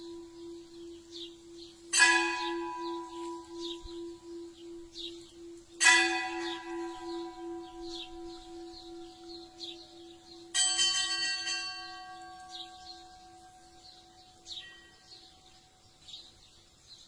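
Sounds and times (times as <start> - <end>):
church bell tolling: 0.0 - 15.8
bird chirping: 0.0 - 17.0.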